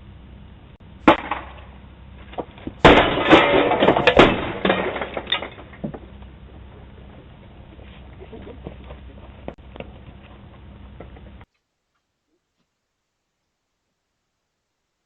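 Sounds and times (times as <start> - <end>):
crashing impacts: 0.8 - 7.8.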